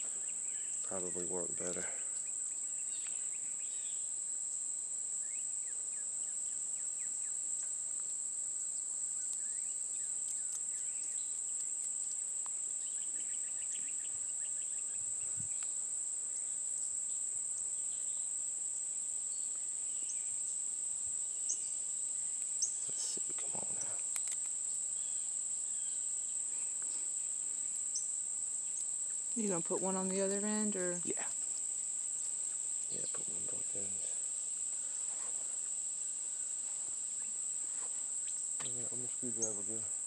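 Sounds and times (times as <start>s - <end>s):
insects chirring: 0.0s - 40.0s
faint bird chirps: 22.6s - 24.0s, 38.2s - 39.8s.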